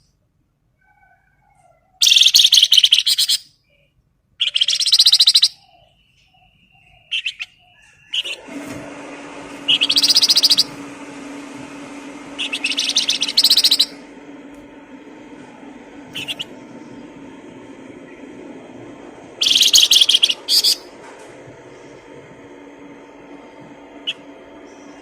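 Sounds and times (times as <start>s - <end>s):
songbird trilling: 2.0s - 3.4s, 4.4s - 8.3s, 9.7s - 10.7s, 12.4s - 14.0s, 16.2s - 16.5s, 19.4s - 20.9s
steady low hum: 8.3s - 25.0s.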